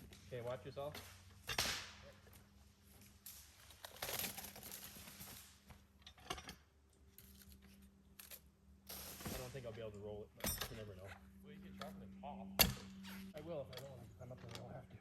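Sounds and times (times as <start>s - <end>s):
brush and twigs rustling: 0.0s - 6.0s.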